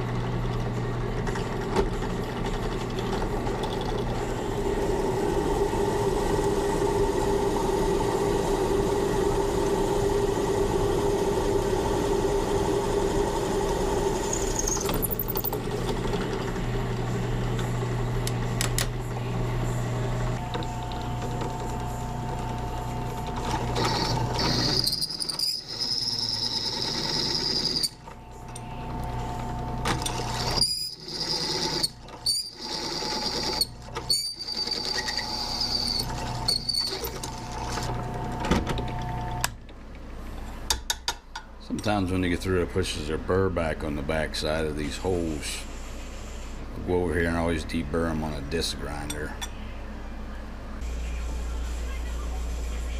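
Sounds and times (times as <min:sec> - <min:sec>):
drill motor running: 0:02.8 - 0:18.0, 0:20.4 - 0:39.4
drill bit whining on metal: 0:05.2 - 0:15.7, 0:20.4 - 0:28.6, 0:29.6 - 0:37.7.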